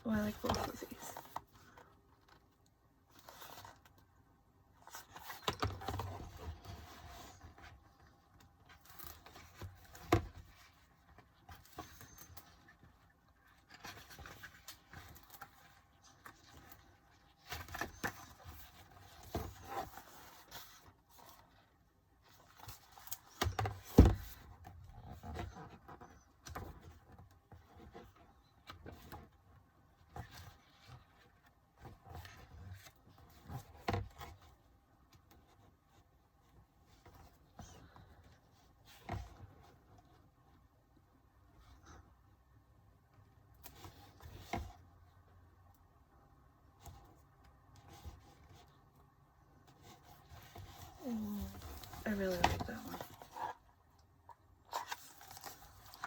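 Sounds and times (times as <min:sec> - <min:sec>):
rustling of album pages: 0:00.0 - 0:56.0.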